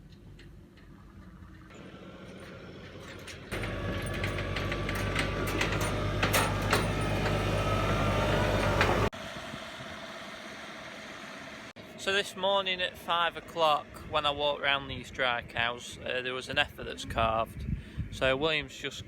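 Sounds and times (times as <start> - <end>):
machinery humming and rattling: 0.0 - 11.9.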